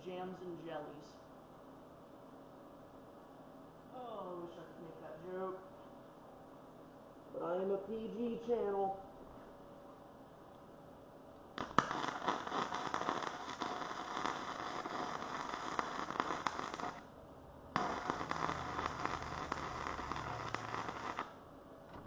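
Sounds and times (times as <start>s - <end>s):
arc welding crackle: 11.6s - 17.1s, 17.7s - 21.4s.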